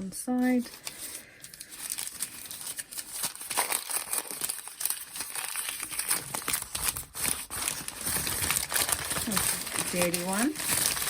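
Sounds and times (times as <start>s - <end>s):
plastic bags crinkling: 0.4s - 11.0s.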